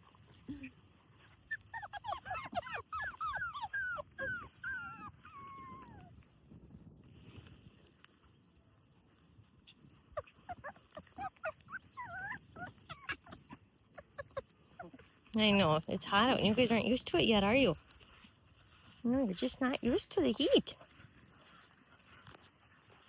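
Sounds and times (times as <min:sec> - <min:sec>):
puppies whimpering: 0:01.4 - 0:06.1, 0:10.2 - 0:15.0.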